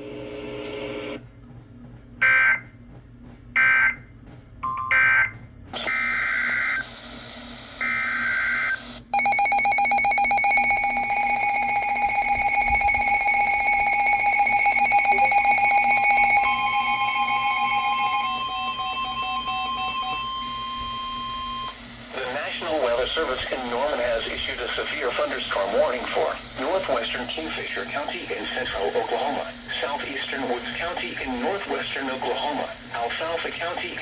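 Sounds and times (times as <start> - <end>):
screeching data bursts: 7.8 - 34.0
electronic alert tone: 9.2 - 21.7.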